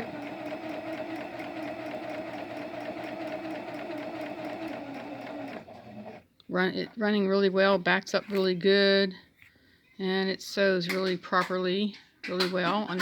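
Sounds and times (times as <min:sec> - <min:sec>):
sewing machine running: 0:00.0 - 0:06.2.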